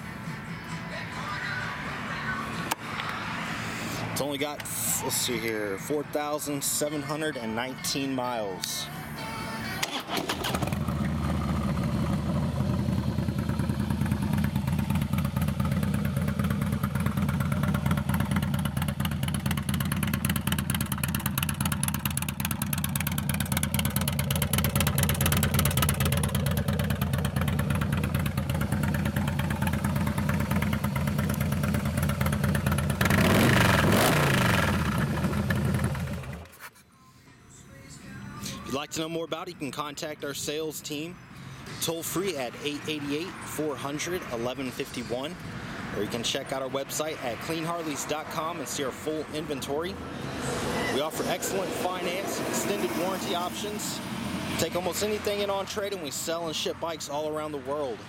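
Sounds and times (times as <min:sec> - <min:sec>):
motorcycle engine starting and idling: 0:08.7 - 0:36.6, 0:50.8 - 0:57.9.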